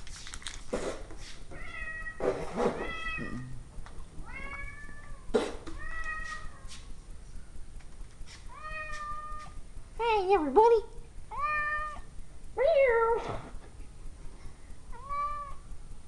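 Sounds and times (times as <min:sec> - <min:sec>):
cat meowing: 0:11.3 - 0:12.1, 0:14.9 - 0:15.6.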